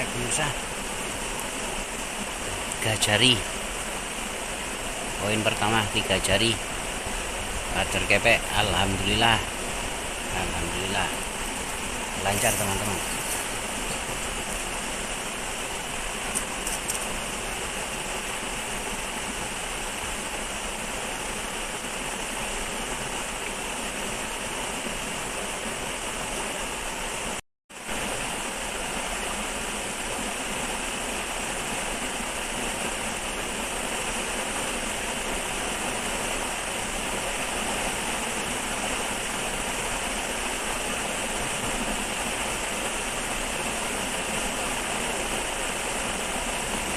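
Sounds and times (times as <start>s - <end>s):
river water flowing: 0.0s - 46.9s.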